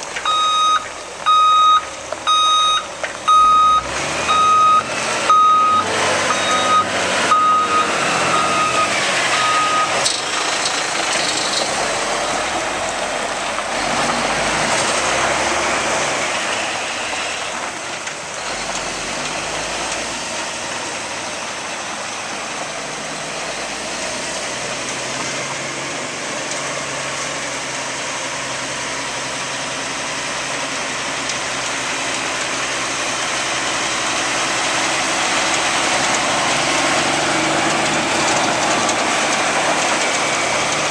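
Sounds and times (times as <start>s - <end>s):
diesel engine running: 0.0s - 40.9s
reversing alarm beeping: 0.2s - 10.0s.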